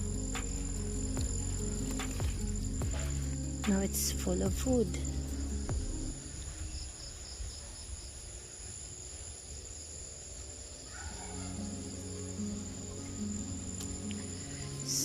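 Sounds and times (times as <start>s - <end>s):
low steady tones: 0.0s - 7.7s, 11.4s - 15.0s
crickets and insects trilling: 0.0s - 15.0s.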